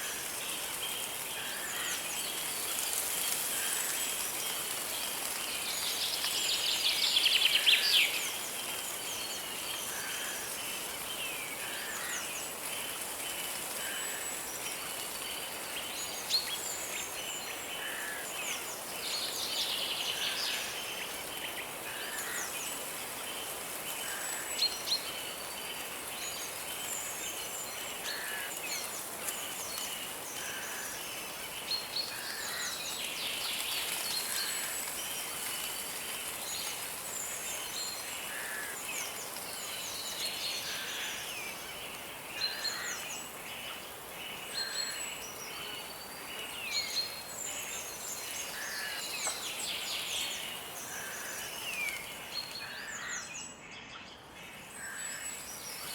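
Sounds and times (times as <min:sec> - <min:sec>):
birds singing: 0:13.4 - 0:55.9.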